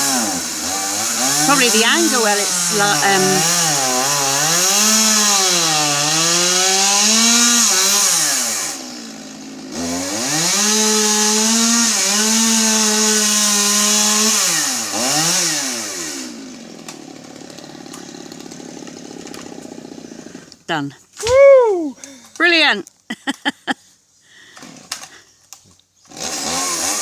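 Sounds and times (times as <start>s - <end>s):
chainsaw cutting wood: 0.0s - 20.7s, 24.4s - 27.0s.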